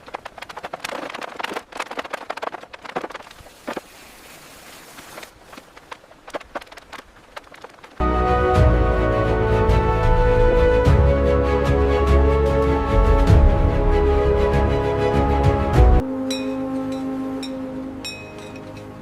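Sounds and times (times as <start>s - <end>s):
rapid irregular clicks and knocks: 0.0s - 3.9s, 5.2s - 8.0s.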